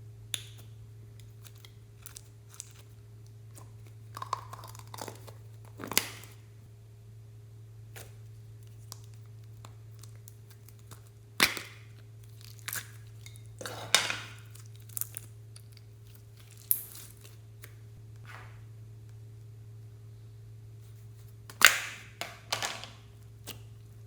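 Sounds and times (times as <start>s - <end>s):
steady low hum: 0.0s - 24.0s
slime popping and crackling: 4.1s - 6.4s, 8.8s - 17.4s.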